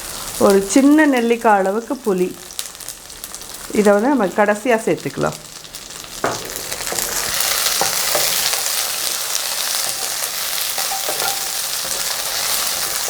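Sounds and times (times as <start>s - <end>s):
food sizzling in oil: 0.0s - 13.0s
spoon knocking in pan: 6.2s - 13.0s.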